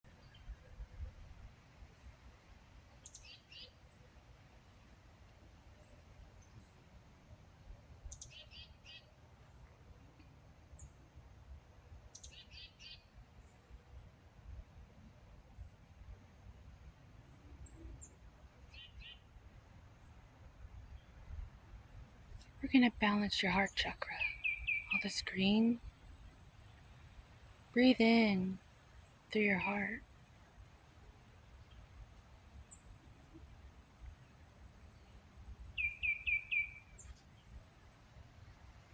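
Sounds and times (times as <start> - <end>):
insects droning: 0.2 - 38.9
songbird singing: 2.9 - 3.8, 8.0 - 9.1, 12.1 - 13.1, 17.6 - 19.3, 20.7 - 28.7, 29.4 - 30.0, 34.9 - 37.8.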